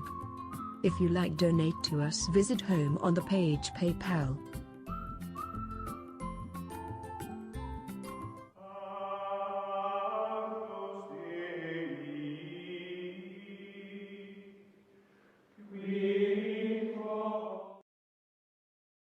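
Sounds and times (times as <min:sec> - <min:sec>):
chant-like held tones music: 0:08.6 - 0:14.7, 0:15.6 - 0:17.8.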